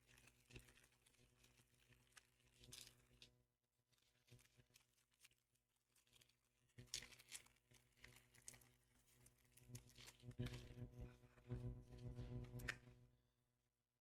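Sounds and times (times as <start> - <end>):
foil wrappers and cards rustling: 3.9 - 10.8.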